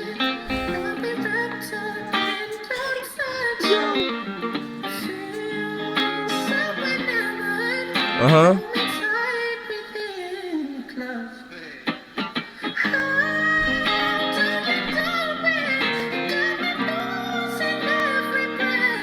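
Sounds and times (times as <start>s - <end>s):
acoustic guitar: 0.3s - 7.5s, 8.2s - 8.6s, 12.0s - 17.3s
man singing high sliding notes: 8.2s - 8.6s.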